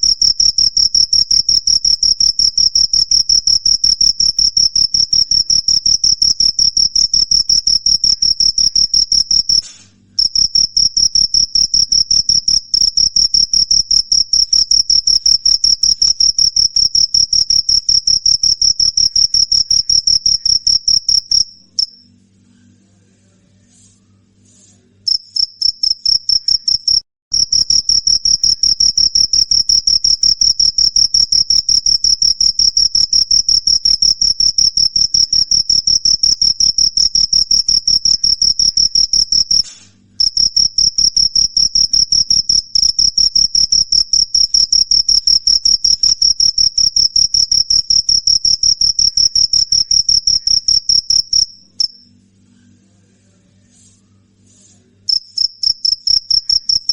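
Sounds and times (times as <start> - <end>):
cricket chirping: 0.0 - 9.6, 10.2 - 22.1, 25.1 - 39.6, 40.2 - 52.1, 55.1 - 56.9.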